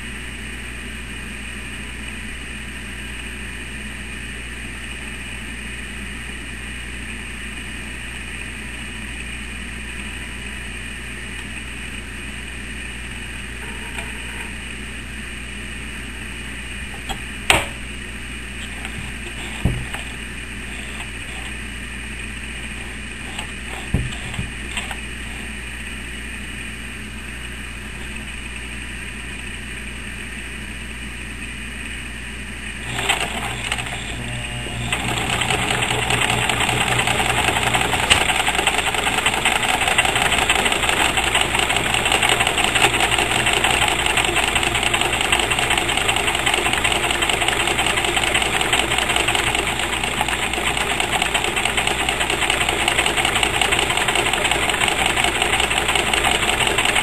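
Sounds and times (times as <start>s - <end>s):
steady low hum: 0.0s - 57.0s
sewing machine stitching: 18.6s - 21.6s, 22.6s - 25.5s, 32.8s - 57.0s.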